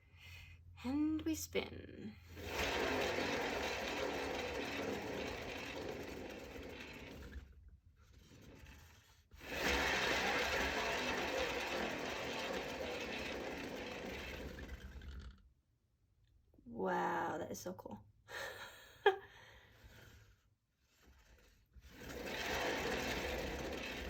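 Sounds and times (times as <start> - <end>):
turntable whirring on bearing: 2.3 - 15.5, 21.2 - 24.0.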